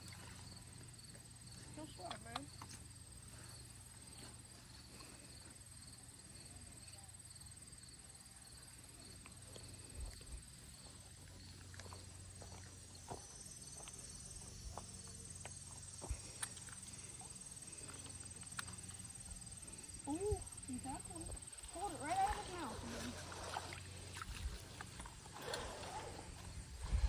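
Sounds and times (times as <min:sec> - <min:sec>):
pulsing insect call: 0:09.6 - 0:27.0.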